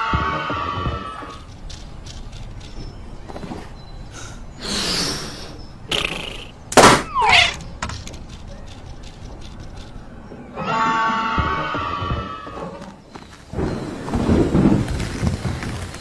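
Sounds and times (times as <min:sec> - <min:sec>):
scattered clicks: 0:01.2 - 0:03.3, 0:07.4 - 0:10.3
loud cartoon hit: 0:06.8 - 0:07.4.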